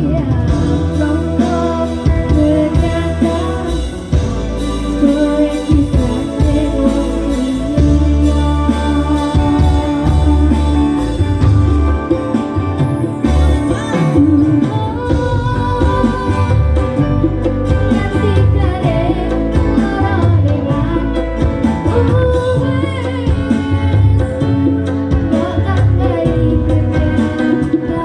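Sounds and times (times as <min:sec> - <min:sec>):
song with singing over a beat: 0:00.0 - 0:28.0.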